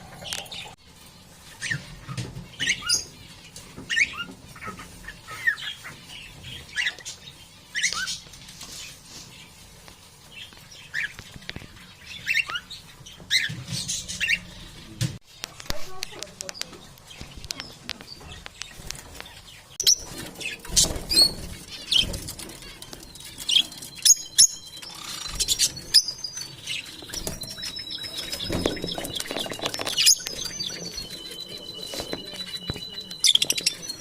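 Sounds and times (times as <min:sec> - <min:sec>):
parrots chirping and squawking: 0:00.0 - 0:09.7, 0:10.3 - 0:16.0, 0:16.6 - 0:34.0.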